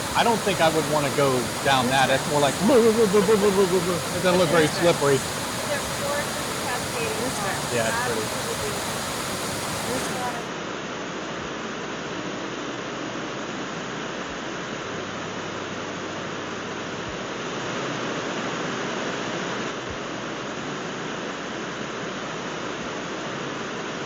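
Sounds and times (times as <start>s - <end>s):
waterfall rushing over rock: 0.0s - 10.6s.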